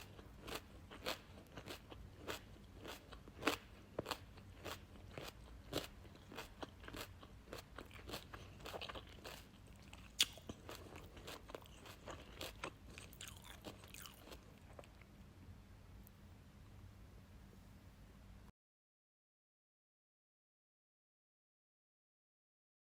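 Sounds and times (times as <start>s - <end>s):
carrot crunching while chewed: 0.0s - 15.2s.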